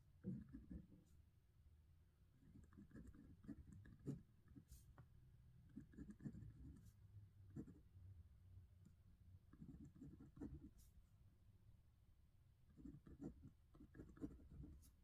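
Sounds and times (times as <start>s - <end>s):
pen scratching on paper: 0.2s - 0.9s, 2.4s - 4.8s, 5.7s - 6.9s, 7.6s - 7.8s, 9.6s - 10.8s, 12.7s - 15.0s.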